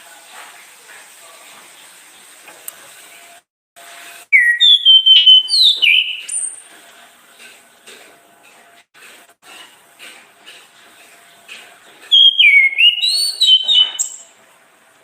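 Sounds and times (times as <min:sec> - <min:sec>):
thrush singing whistled notes: 0:04.3 - 0:06.6, 0:12.1 - 0:14.3.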